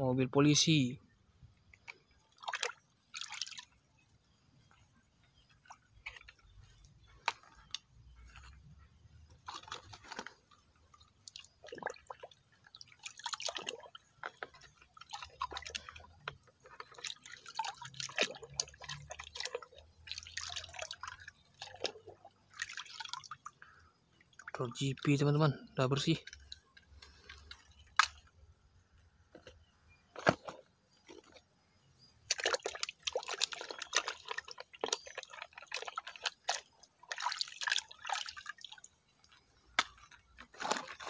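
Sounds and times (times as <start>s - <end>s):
water splashing and dripping: 1.6s - 3.8s, 9.2s - 28.3s, 32.2s - 41.0s.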